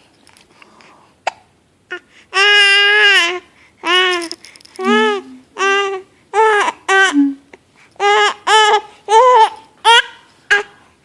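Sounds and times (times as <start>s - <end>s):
baby crying: 4.8s - 7.4s, 8.0s - 10.8s.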